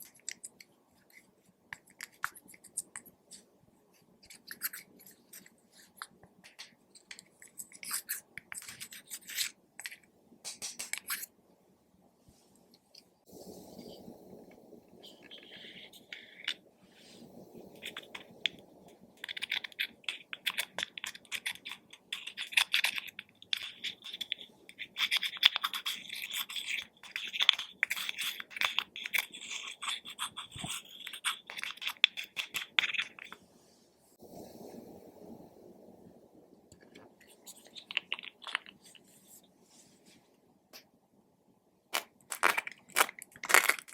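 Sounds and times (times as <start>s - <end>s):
sticky slime crackles and pops: 41.9s - 43.9s.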